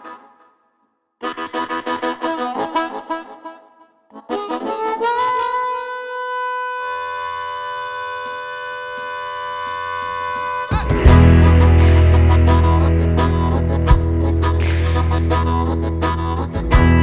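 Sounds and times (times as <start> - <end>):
harmonica long note: 1.2 - 17.0
low bass note: 10.7 - 17.0.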